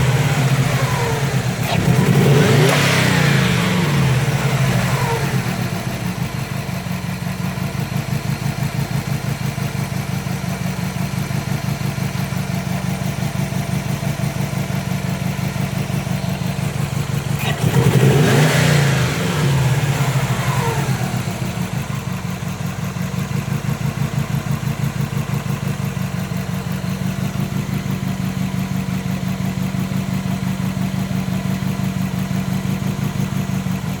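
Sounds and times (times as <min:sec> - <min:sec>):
engine revving: 0:00.0 - 0:07.6, 0:15.5 - 0:22.6
car engine idling with misfire: 0:00.0 - 0:34.0.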